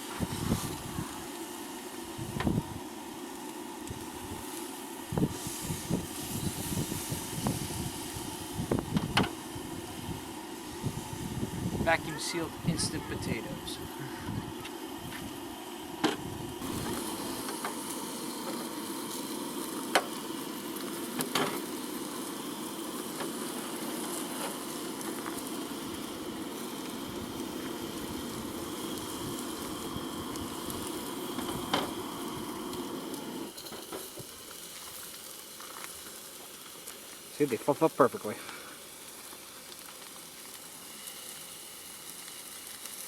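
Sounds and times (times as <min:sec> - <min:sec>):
food hissing on camp stove: 0:00.0 - 0:43.0.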